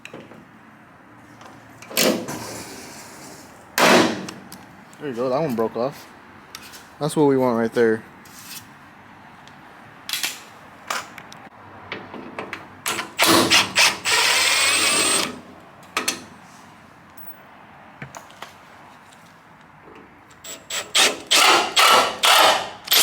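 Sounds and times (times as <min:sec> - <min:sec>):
power tool whining: 0:13.2 - 0:15.4.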